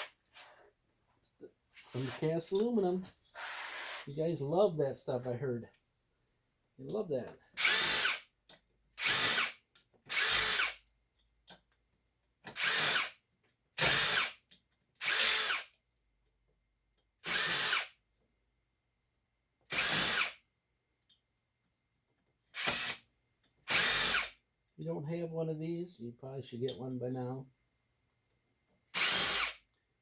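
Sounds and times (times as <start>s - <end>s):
power drill running in bursts: 9.0s - 10.8s, 15.0s - 15.6s, 22.6s - 23.0s, 23.7s - 24.3s, 29.0s - 29.6s.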